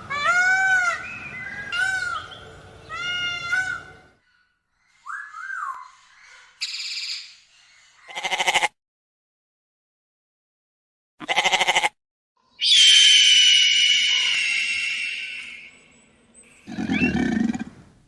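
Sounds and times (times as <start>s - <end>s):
wavering pulsing animal calls: 12.6s - 17.7s.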